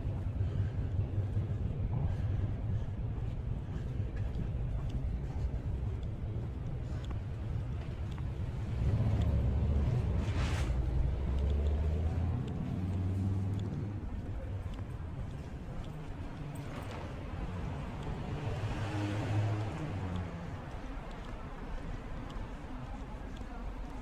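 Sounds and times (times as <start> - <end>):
street traffic rumble: 0.0 - 24.0
car passing with tyre hiss: 9.7 - 11.6.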